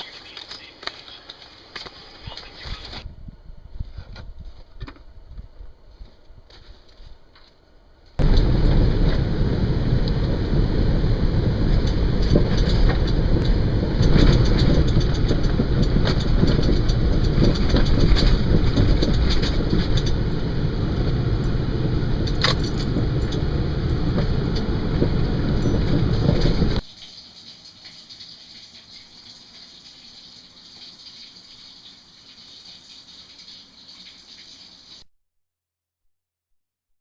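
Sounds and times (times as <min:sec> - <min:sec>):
rattling and clicking: 0:08.2 - 0:26.8
vehicle engine running: 0:08.2 - 0:26.8.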